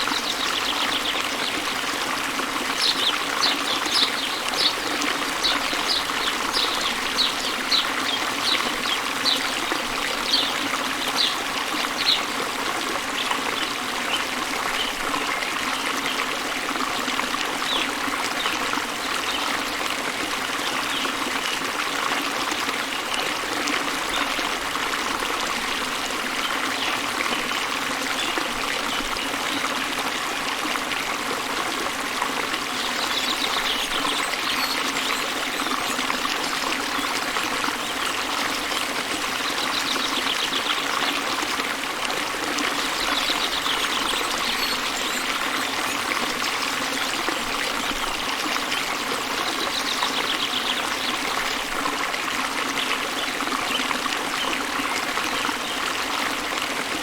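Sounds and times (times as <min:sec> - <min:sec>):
waterfall rushing into river: 0:00.0 - 0:16.2.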